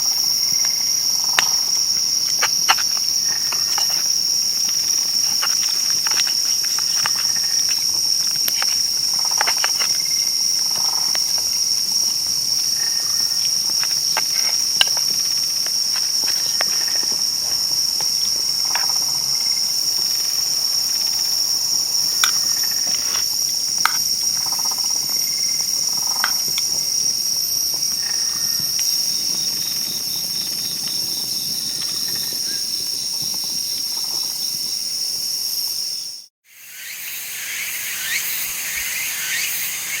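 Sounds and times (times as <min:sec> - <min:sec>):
insect pulsing trill: 0:00.0 - 0:40.0
insects chirring: 0:00.0 - 0:40.0
campfire crackling and popping: 0:00.1 - 0:18.9.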